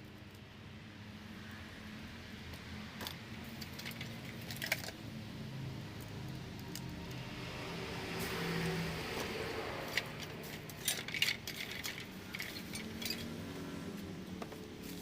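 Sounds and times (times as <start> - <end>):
light metallic clicks and clinks: 9.9 - 13.4.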